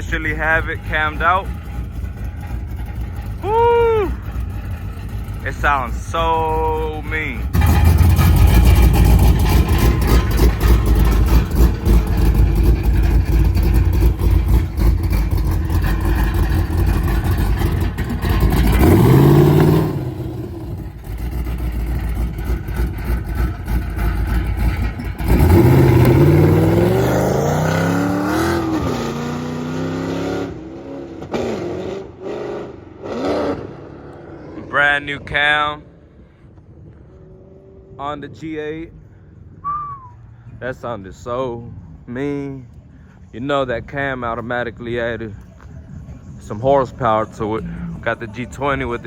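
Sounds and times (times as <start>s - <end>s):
car engine idling lopey: 0.0s - 29.6s, 38.4s - 49.0s
car engine revving: 0.0s - 35.3s.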